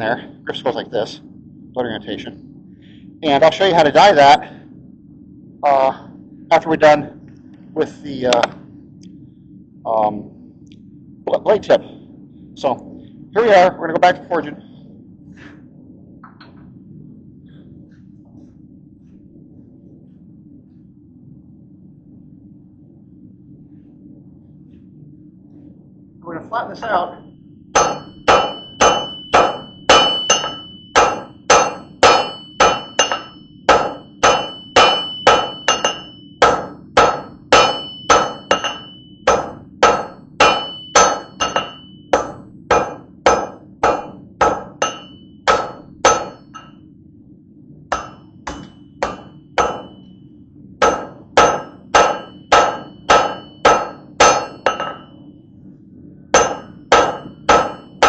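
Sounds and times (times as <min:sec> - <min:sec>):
steady low hum: 0:00.0 - 0:58.0
hammer ringing on anvil: 0:27.8 - 0:46.8, 0:47.9 - 0:50.0, 0:50.8 - 0:55.2, 0:56.4 - 0:58.0.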